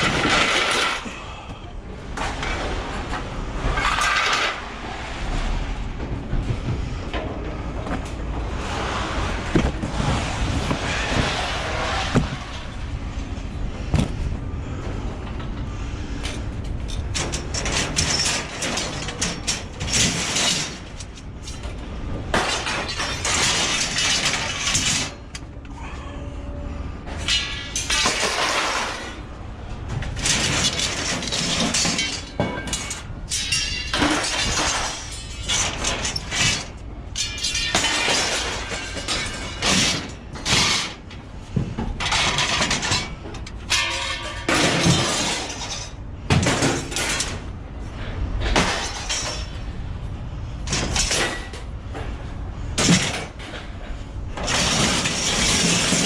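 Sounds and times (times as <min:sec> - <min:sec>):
scrap metal clattering and crashing: 0:00.0 - 0:01.4, 0:02.1 - 0:25.4, 0:27.0 - 0:49.9, 0:50.5 - 0:56.0
metal pieces ringing: 0:30.2 - 0:41.0.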